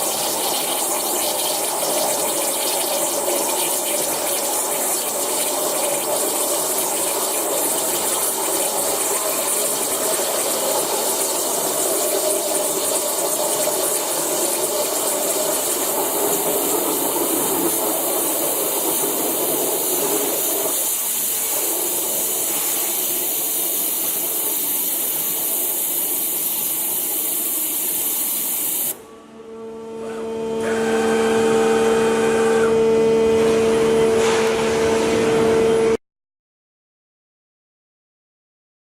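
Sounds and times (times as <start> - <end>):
waterjet cutting hiss: 0.0 - 29.0
machine hum: 29.0 - 36.0.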